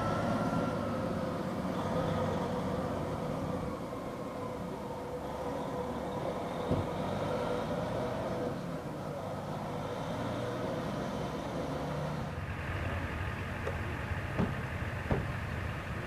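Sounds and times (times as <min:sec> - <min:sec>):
vehicle engine idling: 0:12.2 - 0:16.0
short knock: 0:14.4 - 0:15.3.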